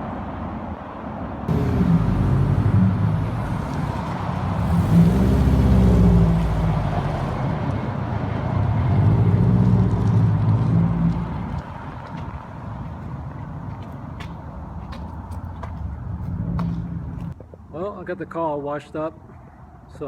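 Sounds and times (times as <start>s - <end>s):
car engine revving: 1.5s - 12.0s.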